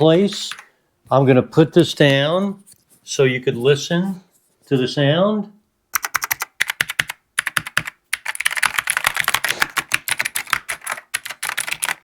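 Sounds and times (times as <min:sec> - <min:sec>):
mechanical keyboard typing: 0:05.9 - 0:12.0.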